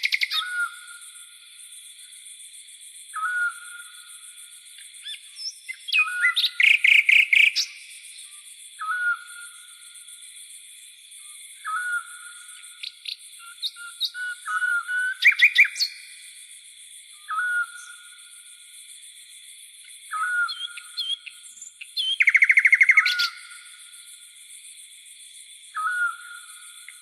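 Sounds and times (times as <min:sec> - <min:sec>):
rapid bird chirps: 0:00.0 - 0:01.1, 0:04.8 - 0:09.9, 0:11.5 - 0:16.4, 0:19.9 - 0:24.1
crickets and cicadas chirring: 0:00.0 - 0:27.0.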